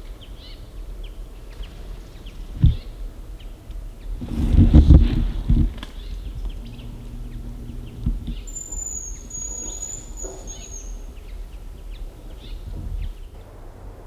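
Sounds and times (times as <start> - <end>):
high thin bird whistle: 6.6 - 11.1.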